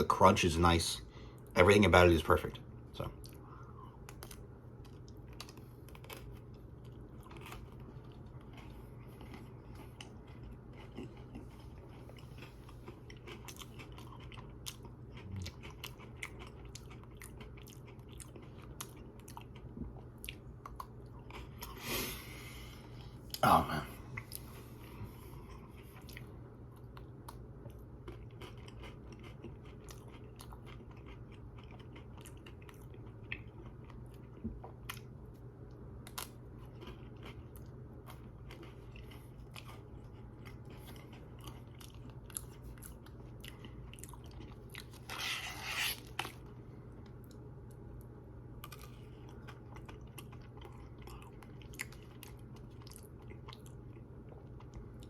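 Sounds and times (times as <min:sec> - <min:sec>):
chewing and crunching biscuit sticks: 0:01.6 - 0:55.0.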